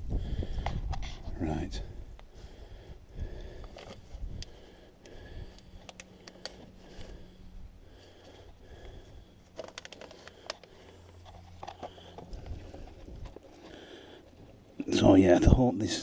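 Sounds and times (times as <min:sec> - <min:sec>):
low hum: 0:00.0 - 0:16.0
small clicks and rustling: 0:03.6 - 0:07.2, 0:08.4 - 0:14.6.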